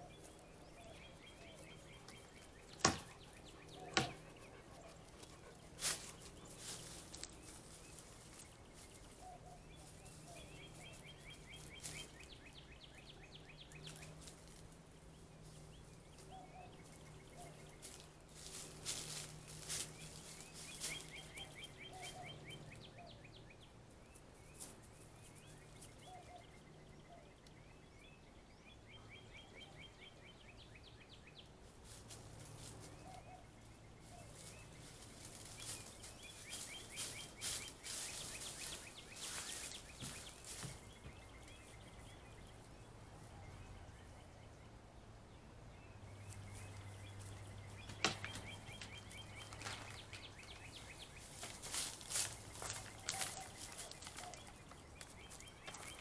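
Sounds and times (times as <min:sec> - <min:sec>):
songbird chirping: 0:00.0 - 0:56.0
rustling and crackling clicks: 0:47.9 - 0:56.0.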